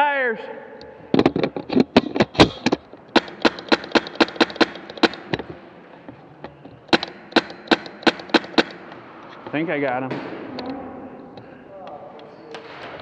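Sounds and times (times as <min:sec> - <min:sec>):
airsoft gun shots: 0:02.0 - 0:05.6, 0:06.9 - 0:09.2, 0:10.1 - 0:10.6.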